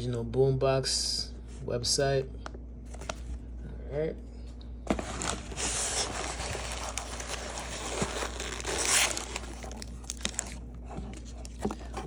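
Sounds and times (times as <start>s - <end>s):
packaging crinkling and rustling: 4.9s - 12.0s.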